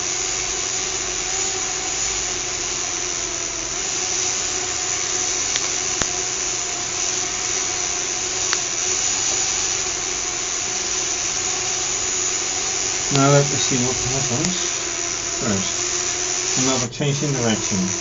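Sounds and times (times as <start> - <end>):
small electric motor whining: 0.0 - 18.0
sharp clicks: 5.0 - 6.2, 8.4 - 8.7, 13.0 - 16.9.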